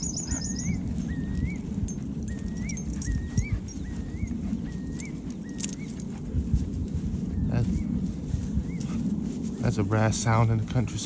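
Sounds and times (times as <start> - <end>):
curlew calling: 0.0 - 1.6.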